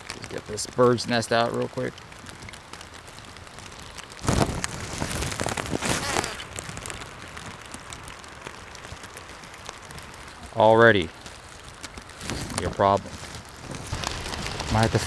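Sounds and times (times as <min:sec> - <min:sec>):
rain falling: 0:00.0 - 0:15.0
close rustling and scraping: 0:03.6 - 0:07.9, 0:08.8 - 0:15.0.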